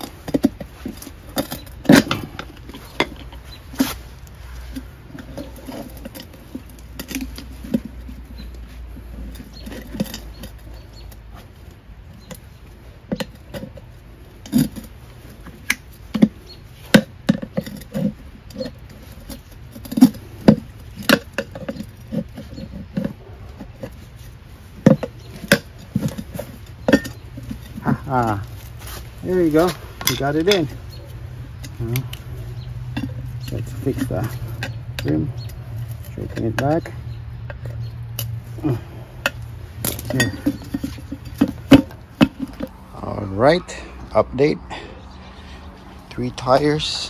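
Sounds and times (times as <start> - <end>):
hand tools scraping: 0.0 - 47.0
hand tools knocking and tapping: 39.2 - 42.8.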